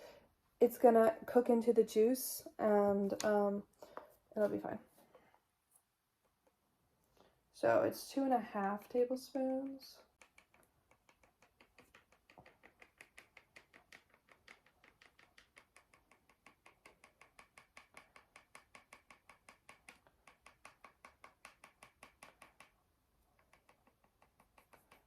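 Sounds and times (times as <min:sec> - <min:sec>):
seasoning container tapping: 0:10.2 - 0:22.8, 0:23.4 - 0:25.0.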